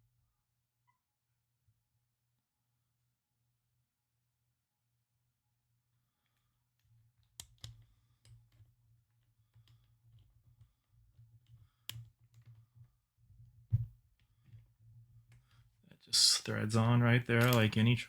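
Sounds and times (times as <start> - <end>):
tripod handling clicks and taps: 17.3 - 17.8.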